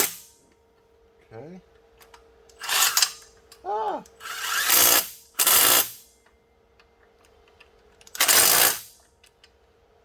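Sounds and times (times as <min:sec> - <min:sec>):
power tool bursts: 0:04.2 - 0:06.0, 0:08.2 - 0:08.9.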